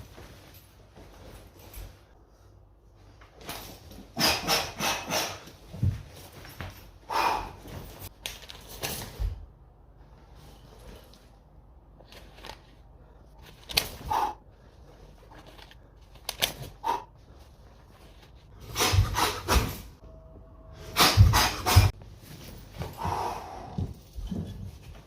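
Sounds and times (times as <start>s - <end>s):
movement noise: 5.4s - 25.0s.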